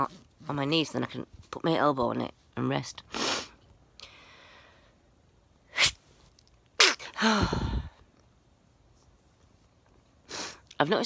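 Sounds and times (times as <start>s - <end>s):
woman sneezing: 5.8s - 6.0s, 6.8s - 7.7s.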